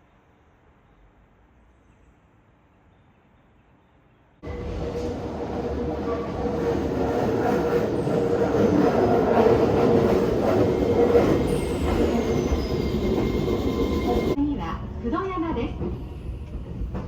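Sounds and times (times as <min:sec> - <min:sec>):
train rumbling on rails: 0:04.4 - 0:17.0
high wheel squeals: 0:10.3 - 0:14.4.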